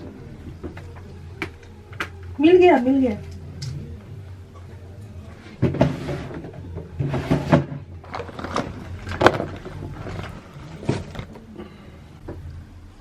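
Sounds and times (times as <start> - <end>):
objects clattering in drawer: 5.4 - 11.5.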